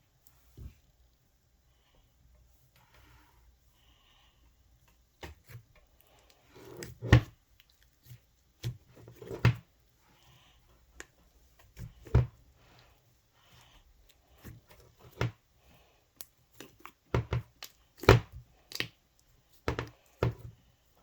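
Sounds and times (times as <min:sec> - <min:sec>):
sticky slime squishes: 0:04.8 - 0:21.0.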